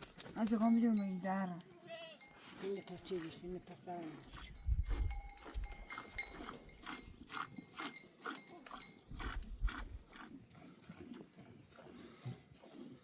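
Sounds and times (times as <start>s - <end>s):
animal bells clinking: 0.1s - 9.2s.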